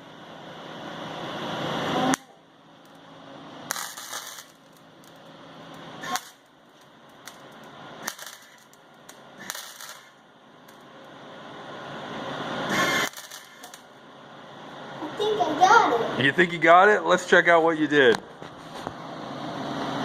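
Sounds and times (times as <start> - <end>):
welding arc crackling: 2.0 - 11.2, 12.6 - 14.2.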